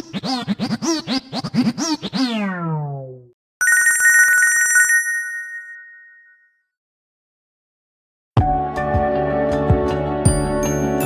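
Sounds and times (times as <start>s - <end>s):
melodic phone ringtone: 3.6s - 6.5s
warbling telephone-bell ringing: 3.6s - 6.5s.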